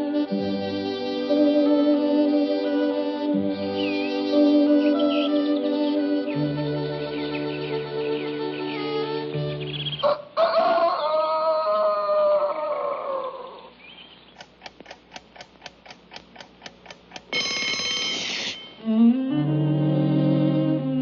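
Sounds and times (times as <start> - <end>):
rooster-like crow: 10.0 - 13.7
clock ticking: 14.4 - 18.8
alarm clock bell ringing: 17.3 - 18.8.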